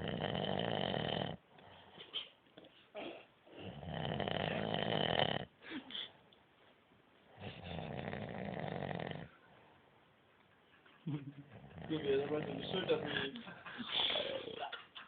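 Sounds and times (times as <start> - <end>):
man snoring: 0.0 - 1.4, 3.6 - 5.5, 7.4 - 9.3.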